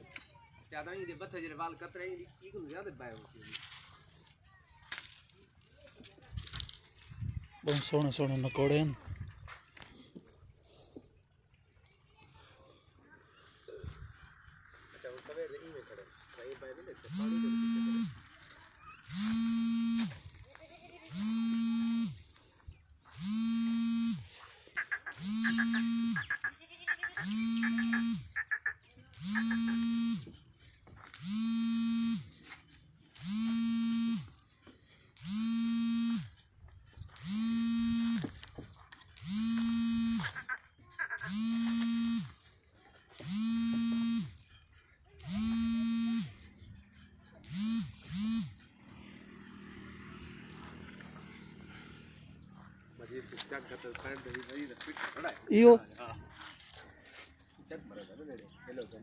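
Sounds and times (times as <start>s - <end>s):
loud buzzing tone: 17.0s - 18.4s, 19.0s - 20.3s, 21.0s - 22.4s, 23.1s - 30.4s, 31.2s - 32.4s, 33.2s - 34.4s, 35.2s - 36.4s, 37.2s - 38.4s, 39.2s - 42.5s, 43.2s - 44.5s, 45.2s - 46.6s, 47.4s - 48.7s.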